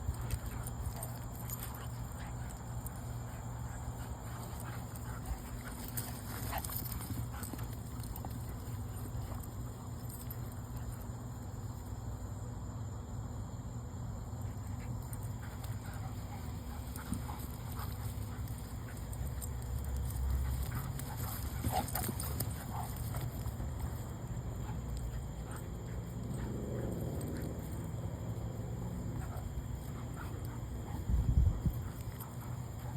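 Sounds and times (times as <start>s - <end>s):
steady low rumble: 14.2s - 32.9s.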